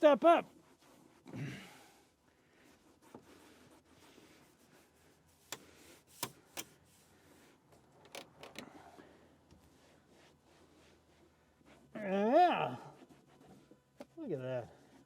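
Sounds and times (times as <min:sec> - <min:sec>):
light rubbing: 0:05.3 - 0:07.0
sharp handling clicks: 0:05.5 - 0:06.8, 0:07.9 - 0:08.6.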